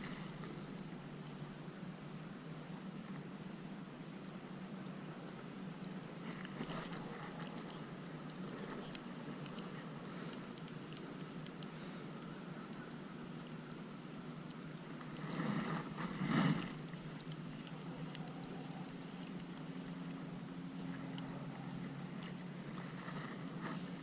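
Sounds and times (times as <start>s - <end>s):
water washing around kayak: 14.6s - 24.0s
water splashing: 14.9s - 23.8s.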